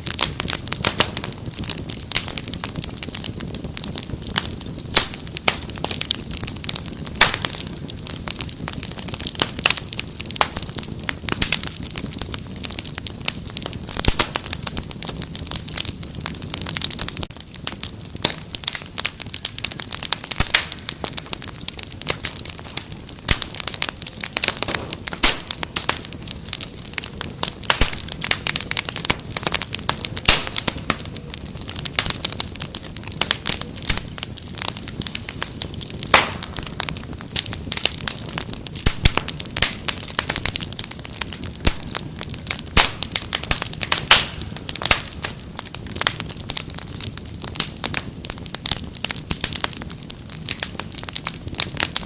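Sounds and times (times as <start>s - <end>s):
wood fire crackling: 0.0s - 52.0s.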